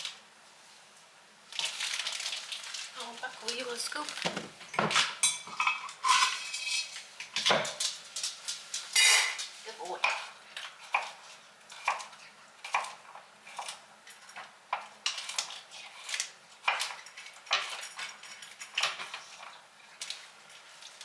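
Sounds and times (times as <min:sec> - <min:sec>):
dishes and utensils clinking: 0:03.9 - 0:10.3, 0:13.6 - 0:21.0.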